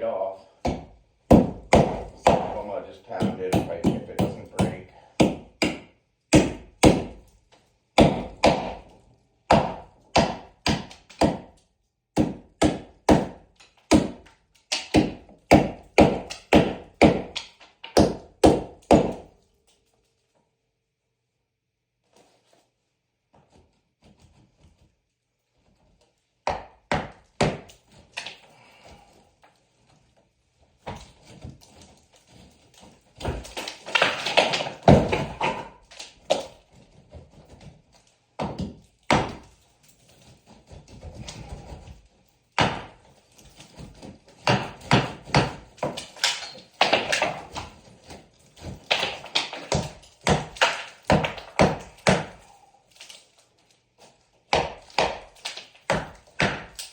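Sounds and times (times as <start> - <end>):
wood scraping: 1.7 - 4.9.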